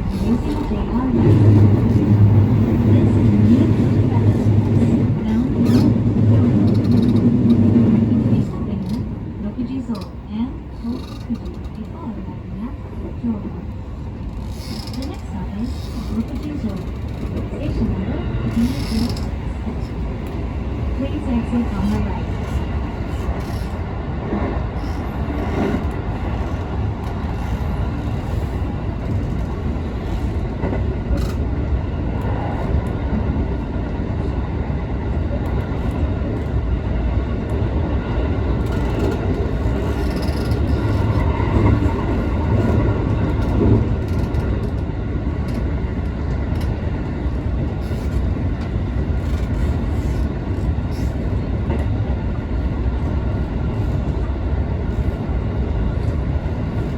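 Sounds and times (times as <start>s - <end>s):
train wheels rumbling on rails: 0.0s - 56.9s.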